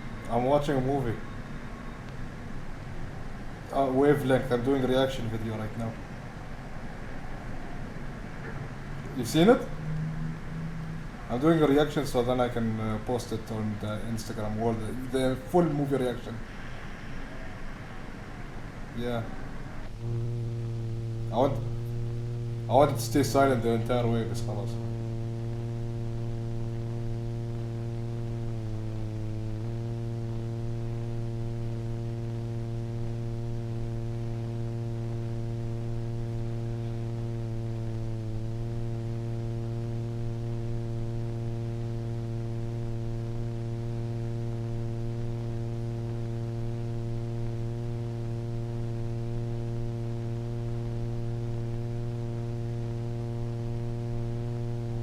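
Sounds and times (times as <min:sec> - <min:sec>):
low electronic drone: 0:00.0 - 0:55.0.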